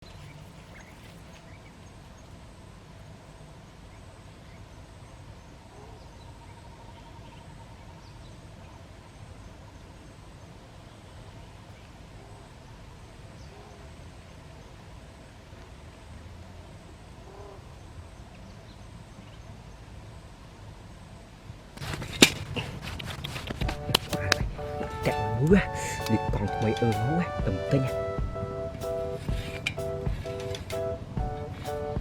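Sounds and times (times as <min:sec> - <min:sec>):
low rumble and hiss: 0:00.0 - 0:32.0
faint bird chirps: 0:03.0 - 0:13.9.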